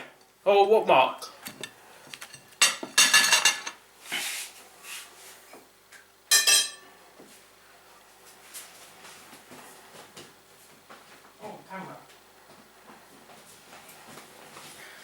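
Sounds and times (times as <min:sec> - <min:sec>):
cutlery and crockery clinking: 0:01.5 - 0:03.8, 0:06.3 - 0:06.8.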